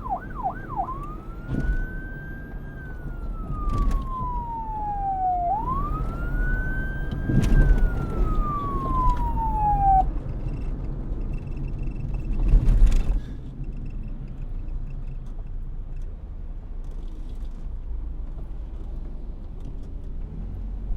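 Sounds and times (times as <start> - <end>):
police siren wail: 0.0 - 10.1.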